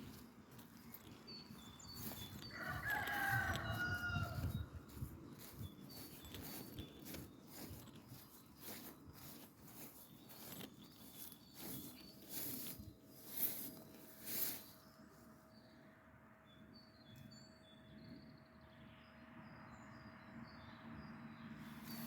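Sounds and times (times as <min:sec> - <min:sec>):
rooster crowing: 0:02.0 - 0:05.1.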